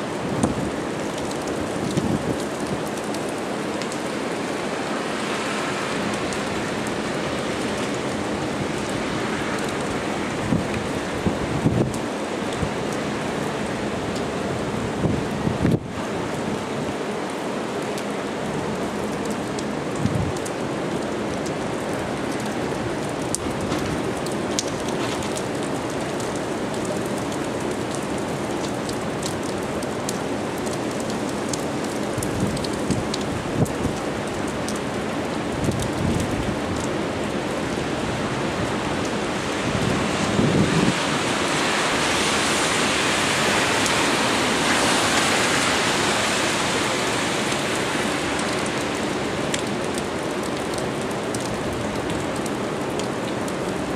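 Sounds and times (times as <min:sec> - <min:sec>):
heavy rain on street: 0:00.0 - 0:53.9
wind: 0:00.0 - 0:53.9.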